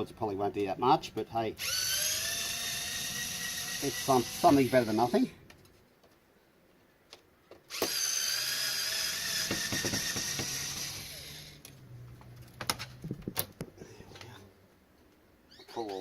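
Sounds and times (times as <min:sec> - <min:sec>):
cordless drill whining: 0:01.6 - 0:05.4, 0:07.7 - 0:11.8.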